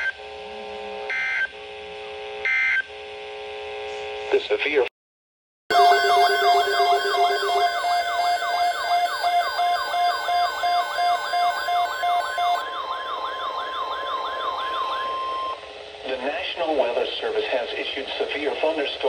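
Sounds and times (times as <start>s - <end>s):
pulsing beep: 5.7s - 15.6s
siren-like falling sweeps: 5.7s - 15.6s
steady alert tone: 5.7s - 15.6s.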